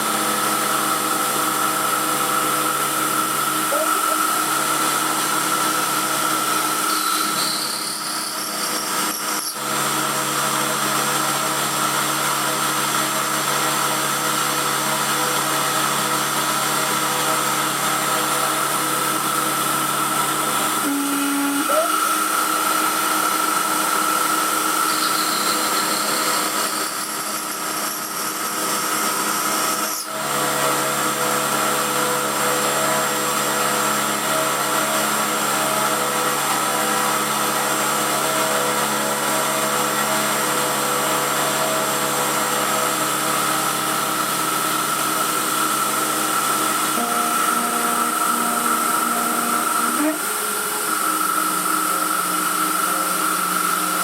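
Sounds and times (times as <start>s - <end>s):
metal cutting noise: 0.0s - 54.0s
milling machine spindle whine: 0.0s - 54.0s
rising high whine: 16.7s - 30.2s, 42.2s - 54.0s.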